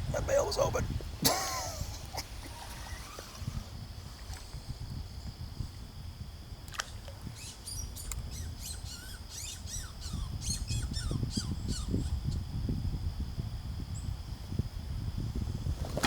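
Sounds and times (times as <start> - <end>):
low steady rumble: 0.0 - 16.0
bird chirping: 7.4 - 12.4.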